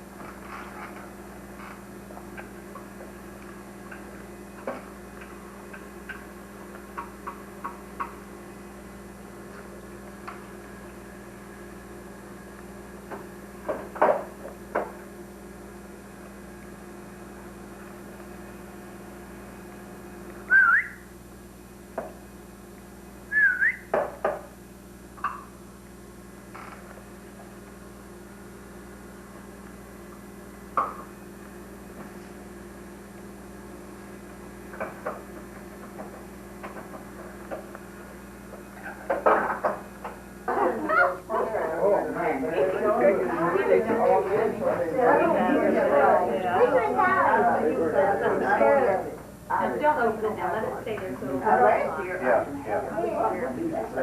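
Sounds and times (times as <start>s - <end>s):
steady electrical hum: 0.0s - 54.0s
whistled chirp gliding in pitch: 20.5s - 21.0s, 23.3s - 23.9s.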